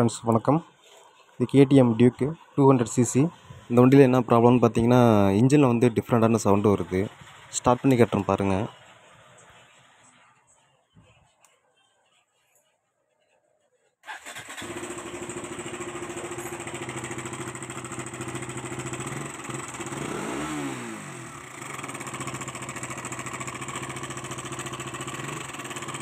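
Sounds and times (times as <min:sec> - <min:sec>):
motorcycle engine idling: 0:01.2 - 0:10.2, 0:14.2 - 0:26.0.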